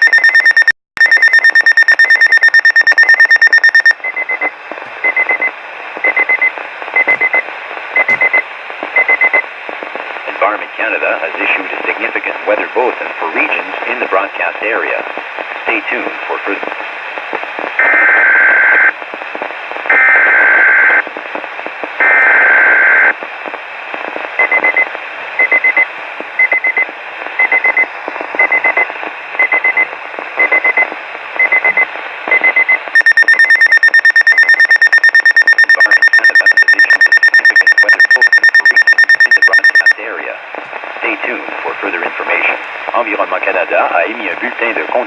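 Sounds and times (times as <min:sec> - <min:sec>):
radio hiss: 0:04.1 - 0:33.4, 0:35.3 - 0:45.0
rapidly pulsing alarm tone: 0:33.0 - 0:39.9.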